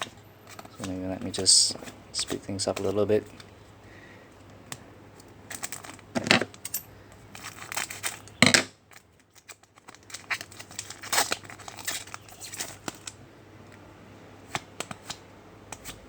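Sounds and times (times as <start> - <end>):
card pack wrappers crinkling: 0.4 - 3.5, 5.2 - 6.1, 7.3 - 13.2.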